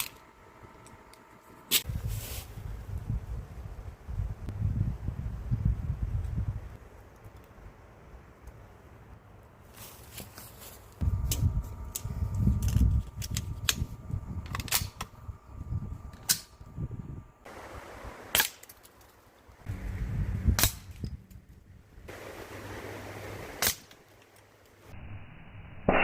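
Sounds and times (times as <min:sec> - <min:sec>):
low rumbling noise: 0:11.0 - 0:18.3, 0:19.6 - 0:23.6.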